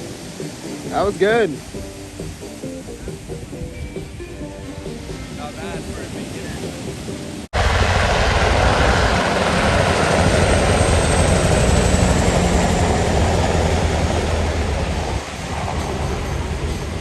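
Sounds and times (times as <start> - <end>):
helicopter rotor and engine drone: 8.5 - 17.0.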